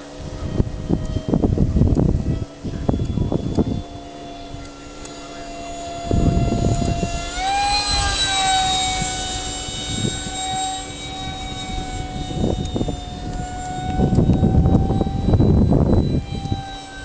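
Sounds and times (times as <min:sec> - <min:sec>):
electric ducted fan whine: 0:00.0 - 0:17.0
low rumble: 0:05.4 - 0:16.6.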